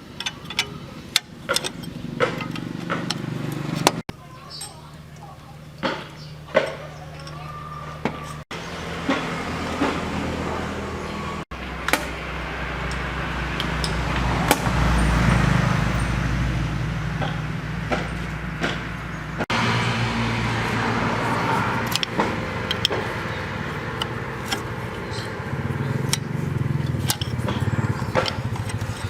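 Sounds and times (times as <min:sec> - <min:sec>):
low-pitched motor running: 0:15.9 - 0:29.0.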